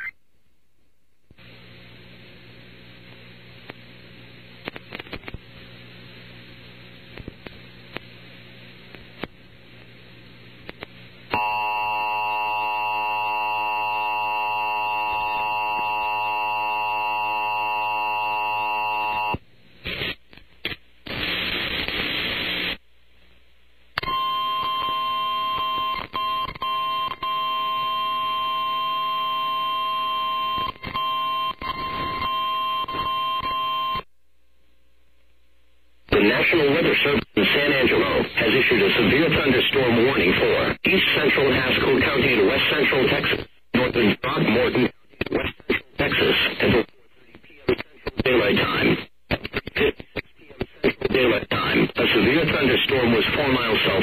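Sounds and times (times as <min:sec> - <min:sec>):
crackling radio noise: 0:00.0 - 0:00.2, 0:01.3 - 0:33.6, 0:36.0 - 0:54.0
faint radio hiss: 0:00.0 - 0:33.6, 0:34.3 - 0:54.0
weather radio alarm tone: 0:11.3 - 0:19.4.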